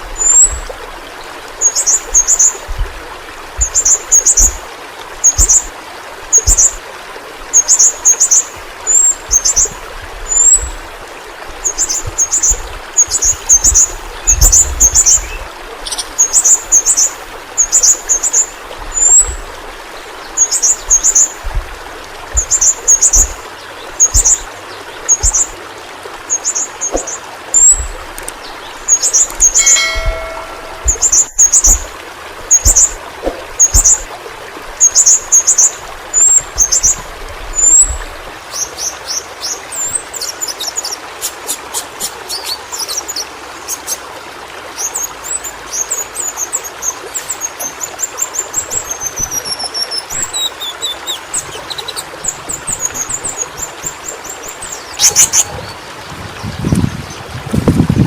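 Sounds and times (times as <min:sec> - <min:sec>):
bird chittering: 0:05.2 - 0:05.7, 0:22.3 - 0:23.4, 0:24.0 - 0:24.5, 0:25.1 - 0:25.5, 0:26.3 - 0:31.9, 0:32.5 - 0:33.0, 0:33.6 - 0:34.1.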